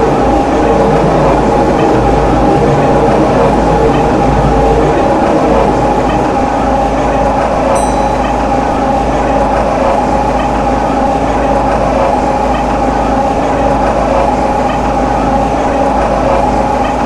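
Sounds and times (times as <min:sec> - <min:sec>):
steady hum: 0:00.0 - 0:17.0
train wheels rumbling on rail: 0:00.0 - 0:17.0
faint high ping: 0:07.8 - 0:08.6.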